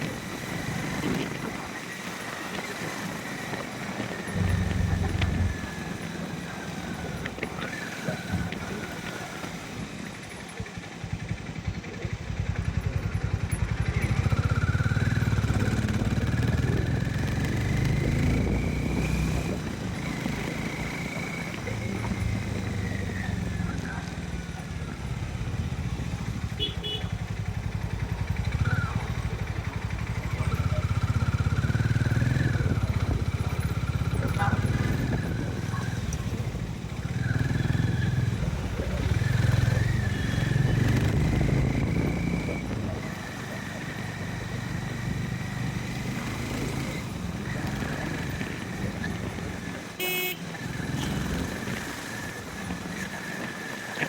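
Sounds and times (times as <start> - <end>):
motorcycle engine running: 0.0 - 54.0
road noise: 0.0 - 54.0
vehicle horn honk: 26.5 - 27.3, 50.0 - 51.1.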